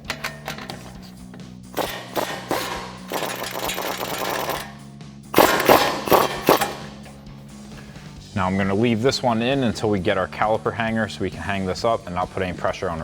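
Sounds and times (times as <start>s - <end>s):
impact wrench rattling: 0.0s - 7.3s.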